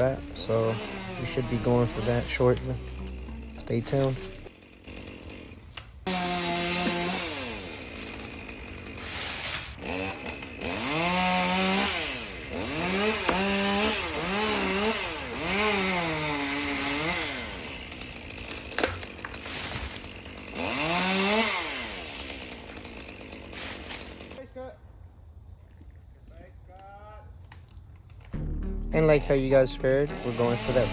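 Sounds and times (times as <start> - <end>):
chainsaw revving: 0.0 - 24.4, 29.2 - 30.9.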